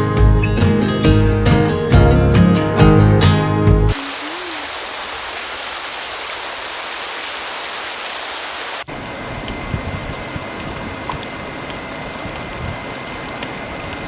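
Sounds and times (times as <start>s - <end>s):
guitar music: 0.0s - 3.9s
steady hiss: 3.9s - 8.9s.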